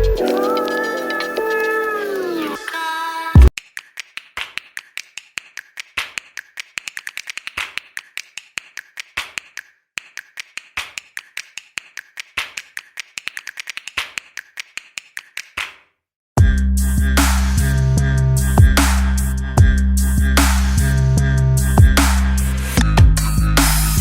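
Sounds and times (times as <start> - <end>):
rapid irregular clicking: 3.6 - 15.6.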